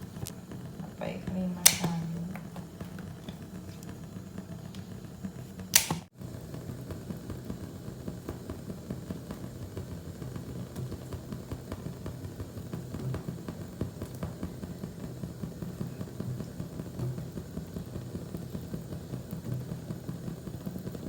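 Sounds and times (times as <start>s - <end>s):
low steady hum: 0.0s - 6.1s.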